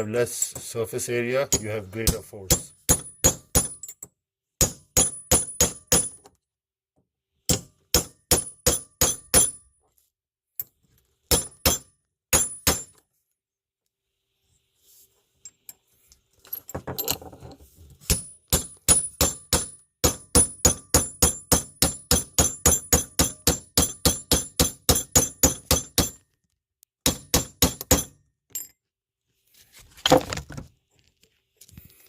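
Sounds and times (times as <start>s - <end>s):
hammer striking metal chisel: 1.4s - 6.4s, 7.5s - 9.7s, 11.3s - 13.0s, 18.0s - 26.3s, 27.0s - 28.7s.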